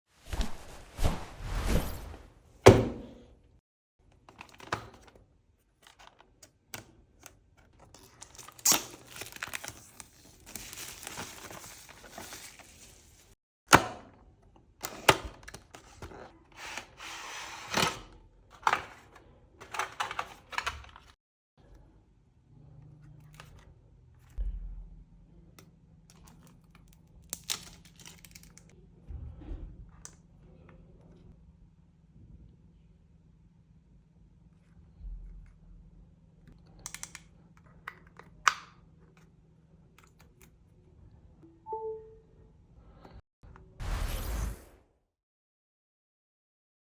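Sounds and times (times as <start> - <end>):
rubbing noise: 0.2 - 2.4.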